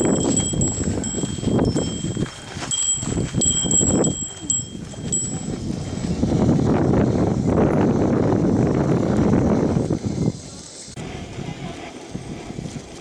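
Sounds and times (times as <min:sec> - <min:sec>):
bell jingling: 0:00.0 - 0:06.2
wind buffeting microphone: 0:00.0 - 0:13.0.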